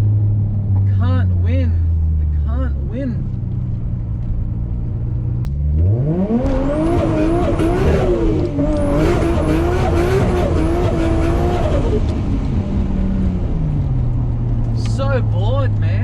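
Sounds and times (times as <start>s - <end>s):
car engine revving hard: 5.6s - 12.6s.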